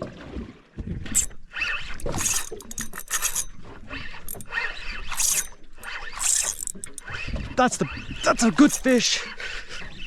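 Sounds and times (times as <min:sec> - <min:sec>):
fishing reel clicking and whirring: 0:01.2 - 0:10.0
clattering handling noise: 0:02.0 - 0:03.6, 0:05.1 - 0:07.1.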